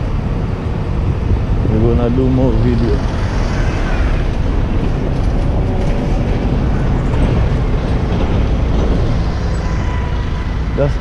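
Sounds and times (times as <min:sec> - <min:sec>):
traffic rumble: 0:00.0 - 0:11.0.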